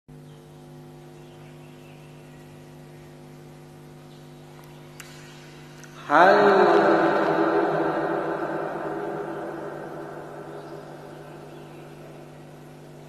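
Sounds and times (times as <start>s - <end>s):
steady electrical hum: 0.1s - 13.0s.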